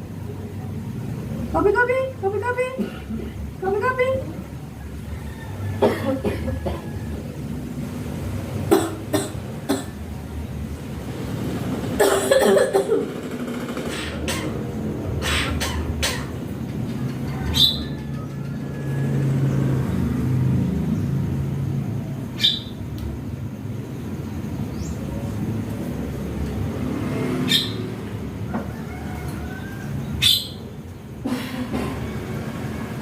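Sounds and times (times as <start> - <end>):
myna bird calls: 13.8 - 18.8, 22.3 - 22.9, 27.4 - 28.0, 28.9 - 30.8.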